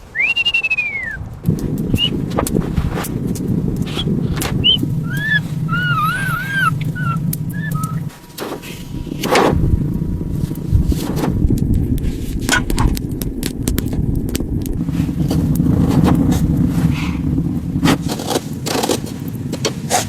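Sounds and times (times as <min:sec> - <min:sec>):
low rushing noise: 0:00.0 - 0:18.1
scattered knocks and clicks: 0:01.4 - 0:16.6
chirping animal calls: 0:03.3 - 0:09.1.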